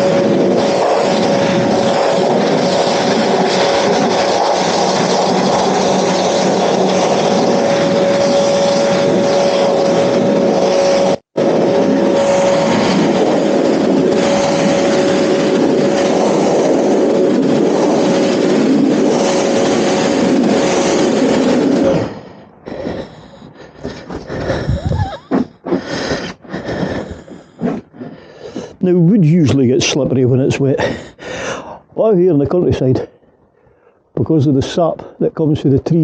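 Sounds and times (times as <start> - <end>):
pressure washer motor whine: 0.0 - 28.7.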